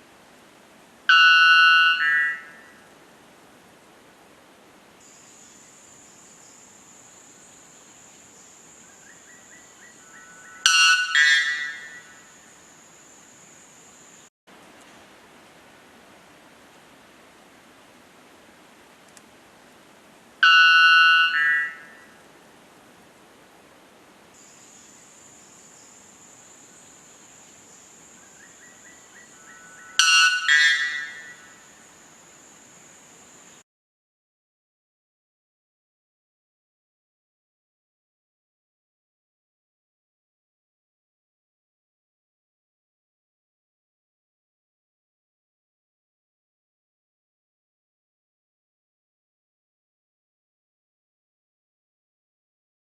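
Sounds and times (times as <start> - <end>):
bellbird ringing call: 1.1 - 2.6, 10.2 - 12.3, 20.4 - 22.0, 29.5 - 31.7.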